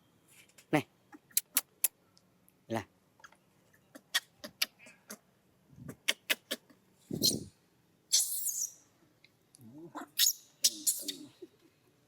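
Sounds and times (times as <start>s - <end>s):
baby monkey crying: 10.1s - 11.4s.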